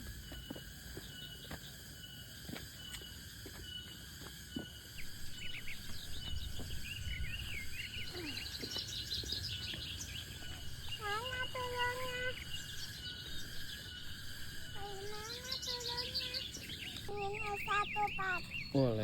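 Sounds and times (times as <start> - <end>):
insects calling: 0.0 - 19.0
birds chirping: 4.8 - 19.0.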